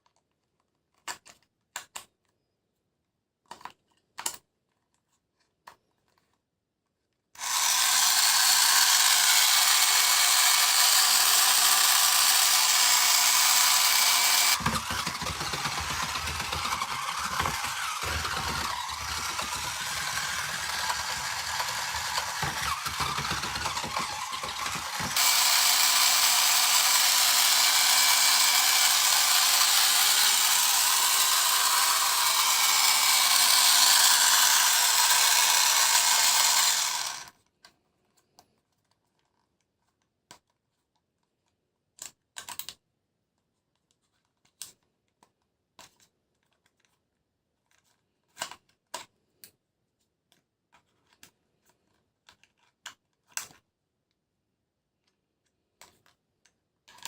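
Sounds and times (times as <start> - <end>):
small electric motor whirring: 7.4 - 37.3.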